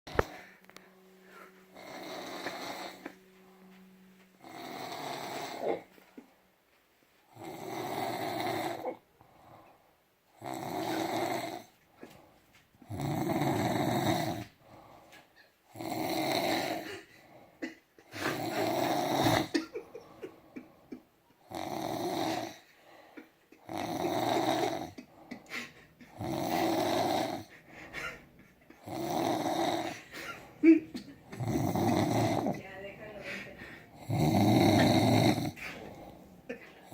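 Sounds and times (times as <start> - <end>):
quiet breaths: 0.1 - 6.4, 7.1 - 36.9
rasping snores: 1.7 - 3.2, 4.4 - 5.9, 7.3 - 9.0, 10.4 - 11.7, 12.8 - 14.9, 15.7 - 17.4, 18.2 - 19.6, 21.4 - 22.7, 23.6 - 25.5, 26.1 - 27.5, 28.8 - 30.3, 31.2 - 32.6, 33.9 - 36.9.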